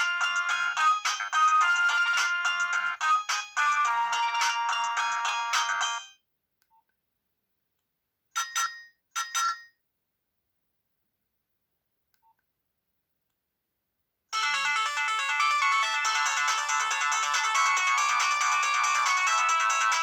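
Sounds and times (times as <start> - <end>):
phone ringtone melody: 0.0 - 6.2, 8.4 - 9.7, 14.4 - 20.0.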